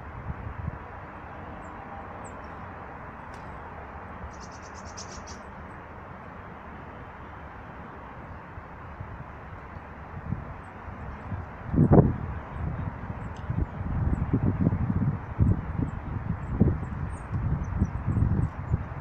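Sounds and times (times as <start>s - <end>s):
steady rushing background noise: 0.0s - 19.0s
small birds chirping: 4.2s - 5.7s
birds twittering: 4.2s - 5.8s.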